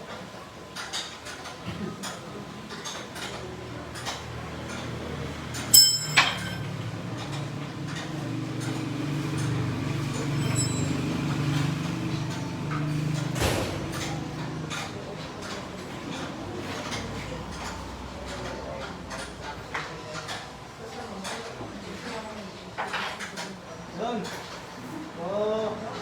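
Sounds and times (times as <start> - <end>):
sharp metal clanks: 5.7 - 6.7.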